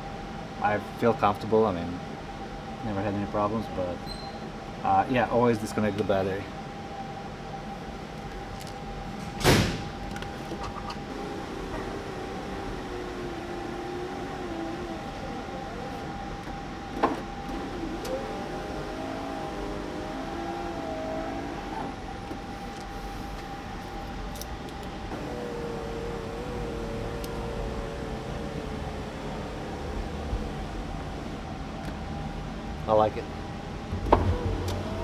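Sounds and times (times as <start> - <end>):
power window motor whine: 8.2 - 35.0.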